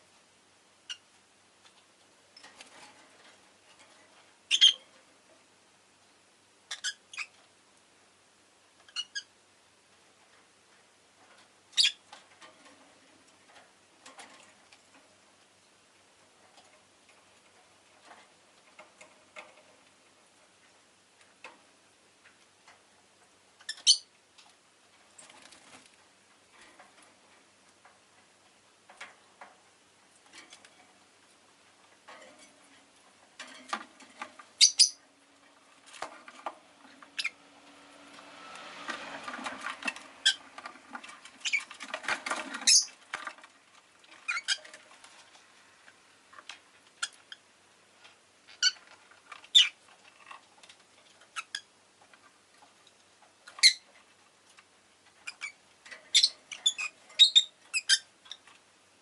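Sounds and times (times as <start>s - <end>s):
faint clicks and rustles: 0.9s - 9.0s, 9.7s - 59.0s
lovebird chirping: 4.5s - 4.8s, 6.7s - 7.3s, 8.9s - 9.3s, 23.7s - 24.1s, 34.6s - 35.0s, 42.6s - 42.9s, 55.2s - 58.1s.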